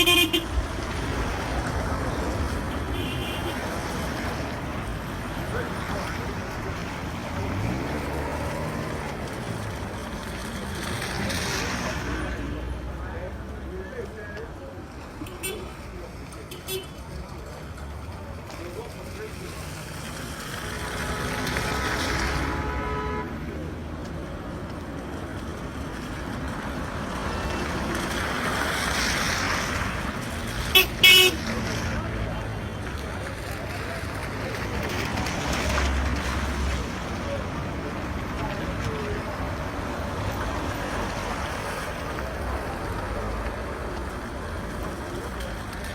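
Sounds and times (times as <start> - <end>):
vehicle horn: 0.0 - 0.6, 2.9 - 3.6, 22.3 - 23.4, 30.7 - 31.4
steady traffic noise: 0.0 - 45.9
vehicle engine rumble: 0.0 - 45.9.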